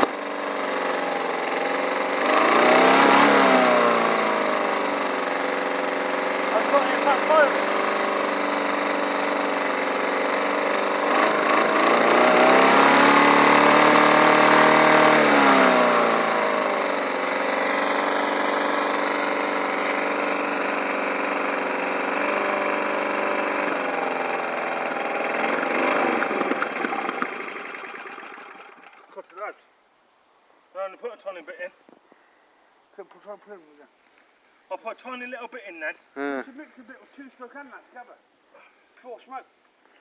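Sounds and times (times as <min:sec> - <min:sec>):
lawn mower engine running: 0:00.0 - 0:29.2
engine backfire pops: 0:25.8 - 0:27.6.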